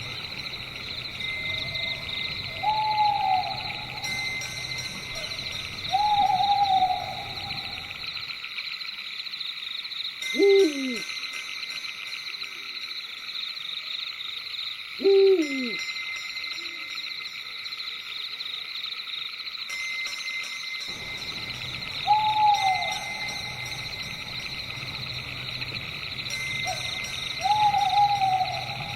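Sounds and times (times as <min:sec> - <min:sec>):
long held call: 0:00.0 - 0:08.0, 0:10.4 - 0:11.0, 0:15.0 - 0:15.8, 0:20.9 - 0:28.9
owl hooting: 0:00.0 - 0:08.2, 0:10.4 - 0:11.0, 0:15.0 - 0:15.8, 0:21.0 - 0:28.9
crickets chirping: 0:00.0 - 0:28.9.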